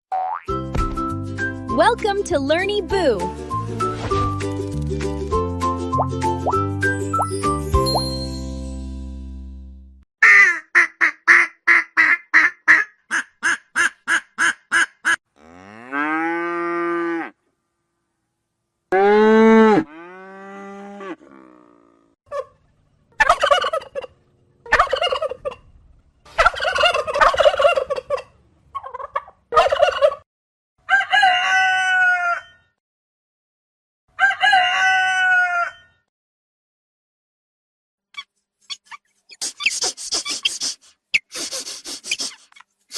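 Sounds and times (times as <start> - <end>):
poultry calling: 23.2 - 25.6, 26.3 - 30.2.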